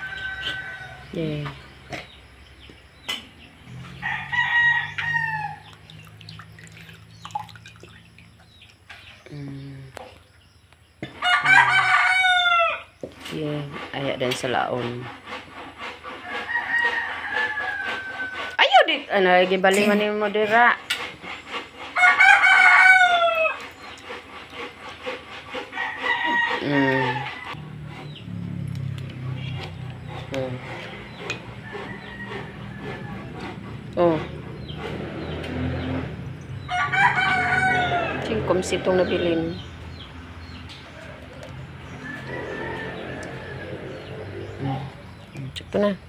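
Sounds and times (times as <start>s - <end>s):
rooster crowing: 0.0s - 1.2s, 3.8s - 5.7s, 11.2s - 12.9s, 16.2s - 18.6s, 22.0s - 23.6s, 25.7s - 27.6s, 31.4s - 33.8s, 36.6s - 38.6s, 41.8s - 44.6s.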